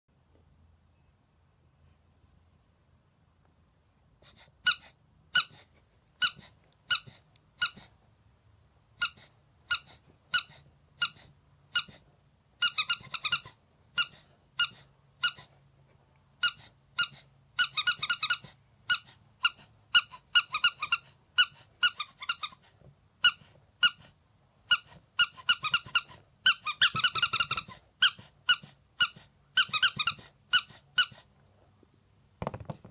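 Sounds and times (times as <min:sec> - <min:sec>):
toy squeaker squeaks: 0:04.3 - 0:07.9, 0:09.0 - 0:12.0, 0:12.6 - 0:15.5, 0:16.4 - 0:31.3.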